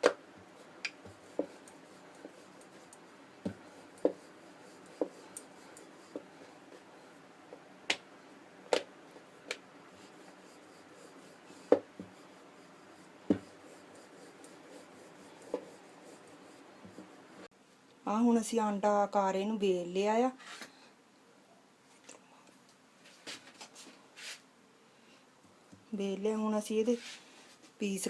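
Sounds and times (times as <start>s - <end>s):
rolling pin rubbing on dough: 0.4s - 7.6s, 9.2s - 17.5s
rolling pin knocking on board: 11.7s - 12.1s, 13.3s - 13.5s.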